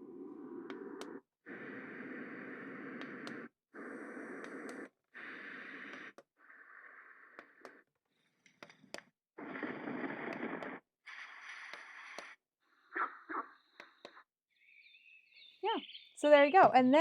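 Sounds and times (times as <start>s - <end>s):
faint clicks: 3.0s - 6.3s.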